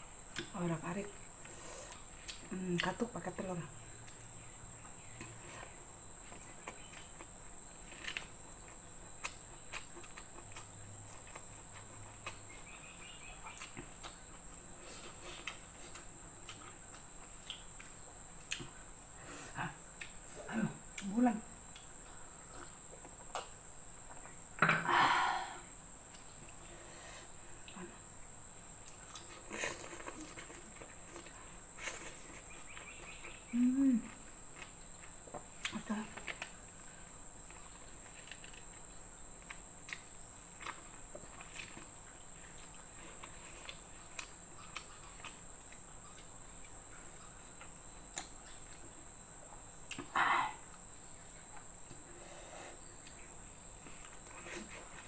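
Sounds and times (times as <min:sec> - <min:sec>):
person humming mm: 0:33.5 - 0:34.2, 0:50.1 - 0:50.7
mouth smacks while chewing: 0:42.6 - 0:46.3.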